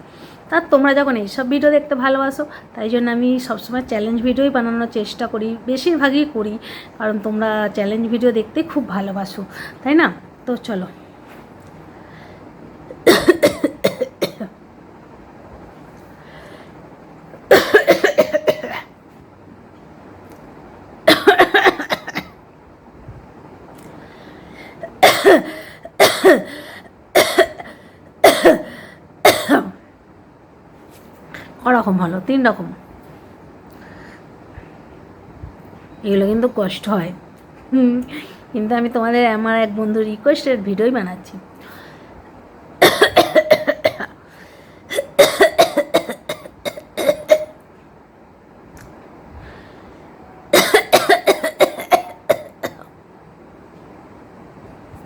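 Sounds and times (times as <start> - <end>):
woman coughing: 12.9 - 14.6, 17.5 - 18.9, 21.1 - 22.4, 24.9 - 29.8, 42.8 - 44.2, 44.9 - 47.6, 50.5 - 52.9.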